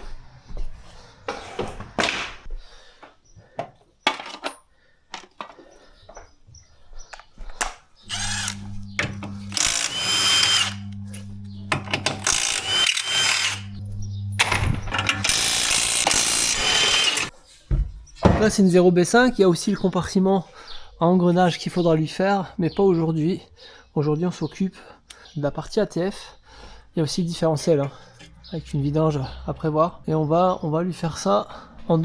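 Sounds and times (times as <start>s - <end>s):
tools clicking and knocking: 3.6s - 5.6s, 7.1s - 10.8s, 11.7s - 13.7s, 14.4s - 17.3s
steady low hum: 8.1s - 17.2s
power tool whirring: 8.1s - 17.3s.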